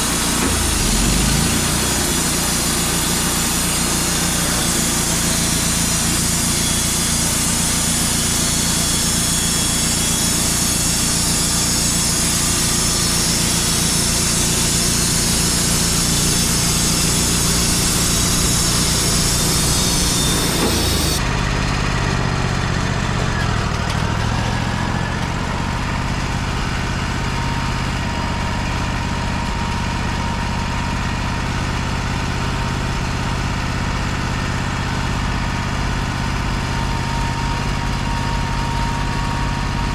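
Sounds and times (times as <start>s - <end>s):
high-pitched blade sawing log: 0.0s - 21.2s
sawmill engine running: 0.0s - 39.9s.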